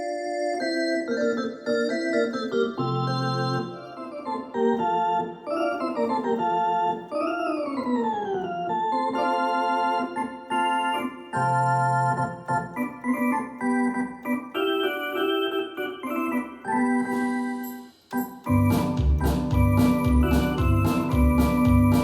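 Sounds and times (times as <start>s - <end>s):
synthesizer playing chords and melody: 0.6s - 22.0s.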